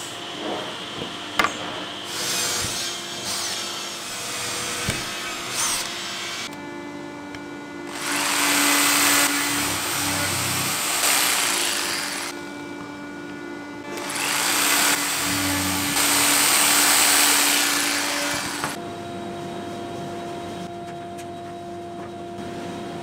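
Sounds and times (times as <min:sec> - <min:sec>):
power tool cutting wood: 0:02.0 - 0:06.6, 0:07.9 - 0:12.4, 0:13.9 - 0:18.8.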